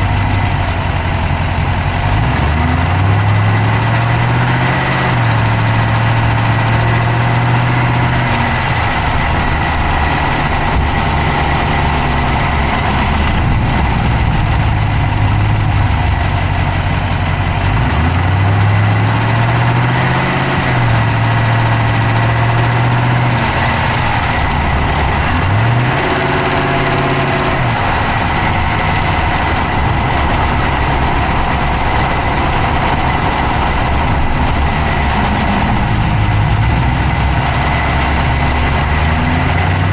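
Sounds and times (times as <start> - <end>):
car engine idling: 0.0 - 39.9
steady high whine: 5.4 - 18.0, 20.6 - 39.8.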